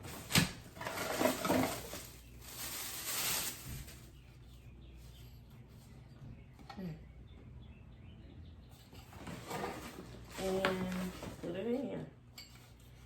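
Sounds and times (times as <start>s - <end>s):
light bulb packaging rustling: 0.0s - 5.3s.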